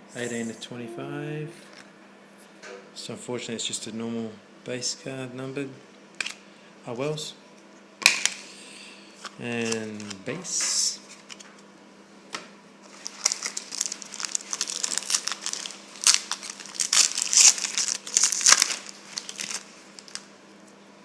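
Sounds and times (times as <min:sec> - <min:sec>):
faint steady hum: 0:00.0 - 0:21.0
wrapper crinkling and tearing: 0:09.2 - 0:10.2, 0:12.8 - 0:20.3.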